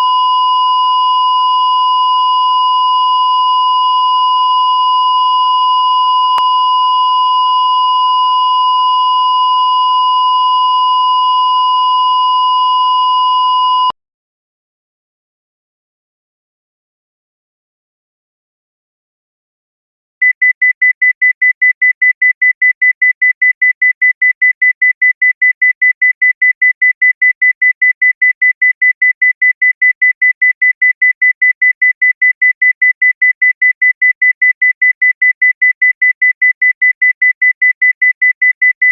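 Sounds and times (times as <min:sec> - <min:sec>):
rapid high monitor beeps: 0:20.2 - 0:38.9.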